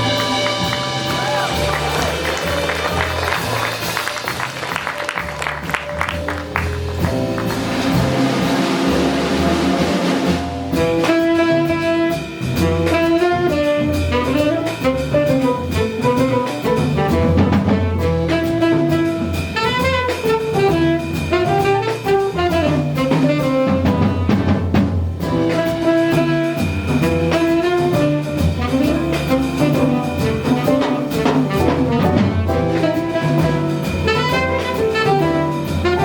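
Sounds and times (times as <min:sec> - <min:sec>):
saxophone melody: 0:00.0 - 0:03.9, 0:10.9 - 0:15.4, 0:25.4 - 0:36.0
bass: 0:00.0 - 0:36.0
drum kit with cymbals: 0:00.0 - 0:36.0
piano: 0:00.0 - 0:36.0.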